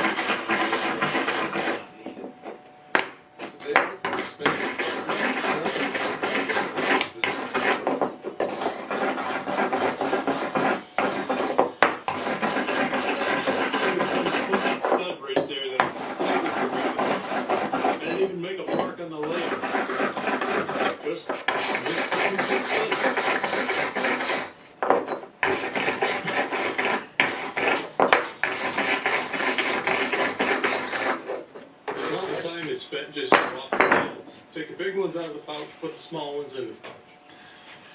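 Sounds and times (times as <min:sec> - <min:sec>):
grinder grinding aluminum: 0:00.0 - 0:01.9, 0:04.1 - 0:14.9, 0:15.8 - 0:18.6, 0:19.2 - 0:24.6, 0:25.4 - 0:32.5.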